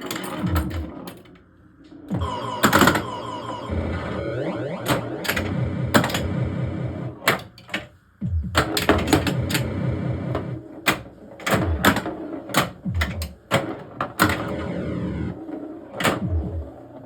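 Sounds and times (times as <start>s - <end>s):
electronic falling tones: 2.1s - 7.2s.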